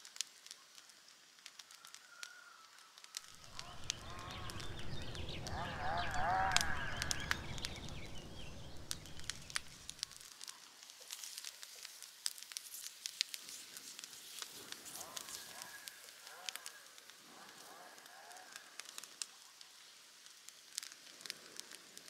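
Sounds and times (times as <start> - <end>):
campfire crackling and popping: 0.0 - 22.0
low rumble: 3.2 - 10.0.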